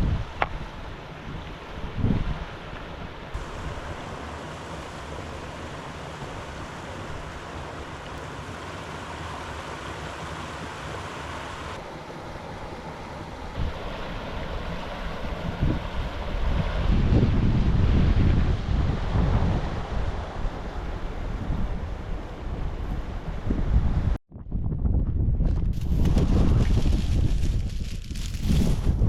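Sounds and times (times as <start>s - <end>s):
wind buffeting microphone: 0.0s - 8.6s, 13.5s - 29.0s
river water rushing: 0.8s - 16.8s.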